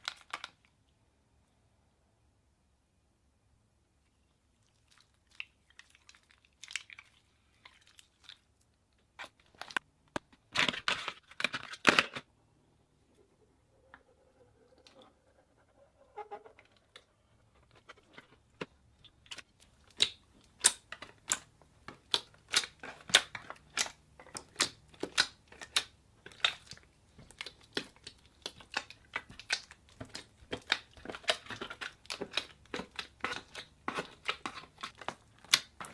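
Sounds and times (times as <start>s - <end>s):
slime crackling and popping: 19.2s - 35.9s.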